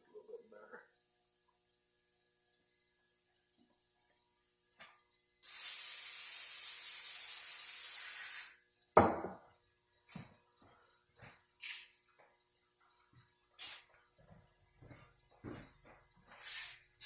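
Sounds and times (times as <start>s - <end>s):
spraying hiss: 5.4s - 8.6s, 16.4s - 16.8s.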